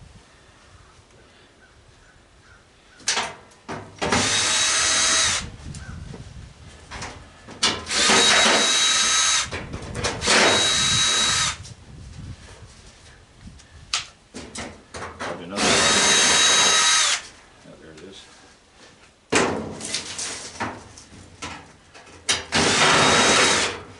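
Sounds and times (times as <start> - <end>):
power drill whining: 4.0 - 5.5, 7.6 - 11.6, 15.6 - 17.3, 22.5 - 23.9.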